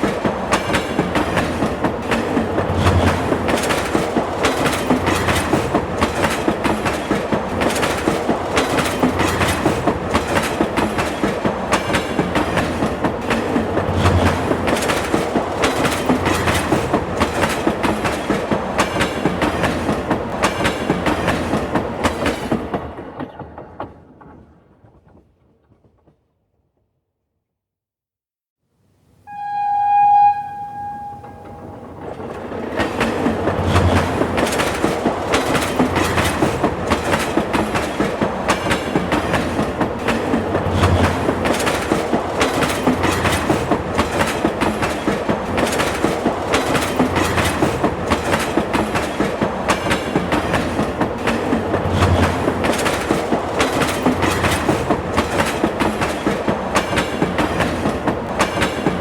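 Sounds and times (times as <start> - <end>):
train wheels clattering on rails: 0.0 - 26.2, 31.0 - 59.0
short horn-like tone: 29.3 - 32.0.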